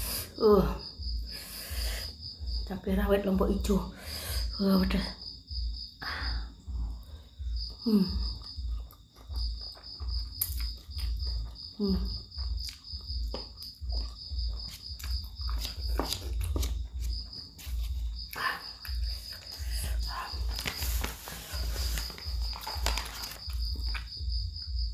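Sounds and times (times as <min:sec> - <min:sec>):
close chewing and eating: 0:06.8 - 0:24.8.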